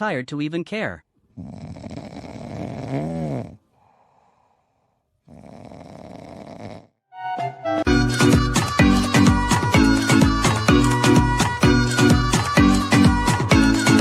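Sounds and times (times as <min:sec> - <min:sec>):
pet snoring: 0:01.3 - 0:07.0.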